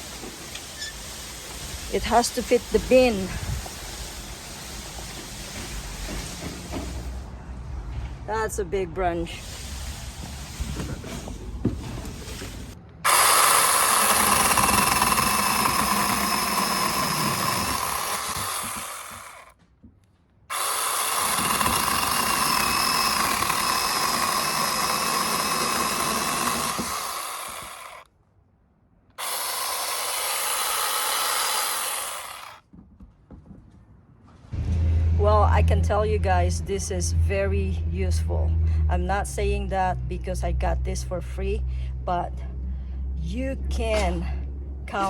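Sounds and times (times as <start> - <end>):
chainsaw cutting through wood: 13.1 - 19.5, 20.5 - 28.0, 29.2 - 32.6.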